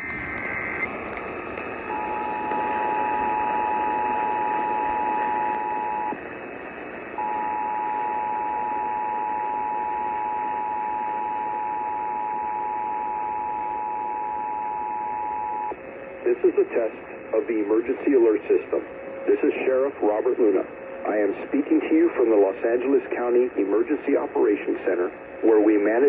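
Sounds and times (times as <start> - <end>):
two-tone alarm: 0.0 - 6.2, 7.2 - 15.7
static hiss: 0.0 - 14.1, 15.6 - 26.0.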